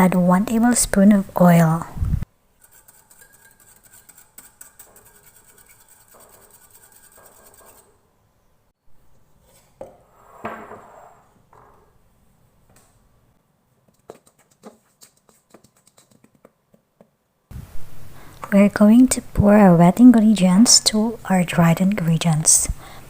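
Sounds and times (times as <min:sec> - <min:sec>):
whisk clicking and scraping bowl: 0:02.5 - 0:08.0, 0:13.9 - 0:16.6.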